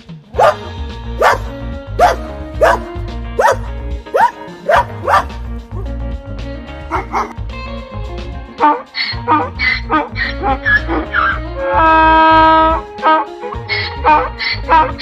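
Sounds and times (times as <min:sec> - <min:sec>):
background music with low beat: 0:00.0 - 0:15.0
dog barking: 0:00.4 - 0:05.4, 0:06.9 - 0:07.4.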